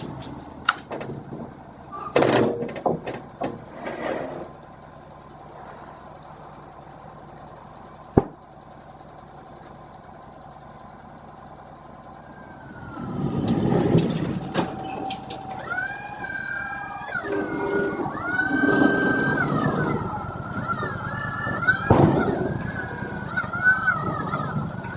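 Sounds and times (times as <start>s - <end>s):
sawmill machinery hum: 0.0s - 24.9s
machine whine: 11.8s - 24.9s.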